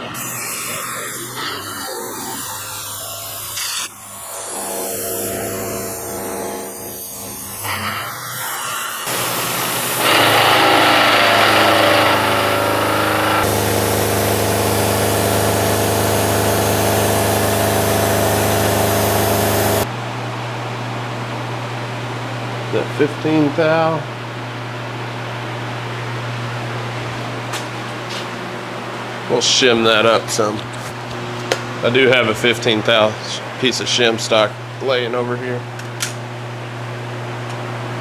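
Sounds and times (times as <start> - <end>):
milling machine cutting metal: 0.0 - 19.9.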